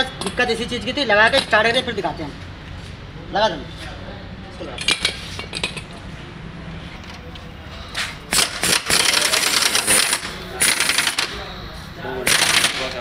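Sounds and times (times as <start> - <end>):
wrench rattling metallically: 8.4 - 11.3.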